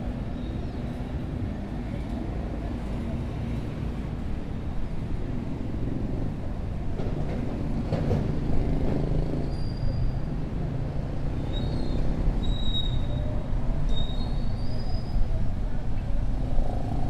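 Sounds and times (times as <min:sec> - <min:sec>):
bus engine: 0:00.0 - 0:17.0
traffic rumble: 0:00.0 - 0:17.0.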